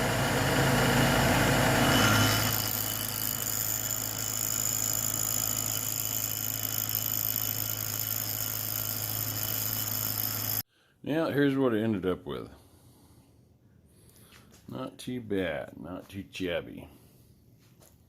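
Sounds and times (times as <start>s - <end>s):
motor humming: 0.0s - 10.6s.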